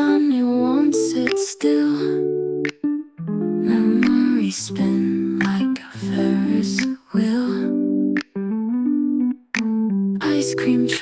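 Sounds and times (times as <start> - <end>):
person singing: 0.0 - 2.3, 3.6 - 7.8, 10.2 - 11.0
sustained keyboard chords: 0.0 - 11.0.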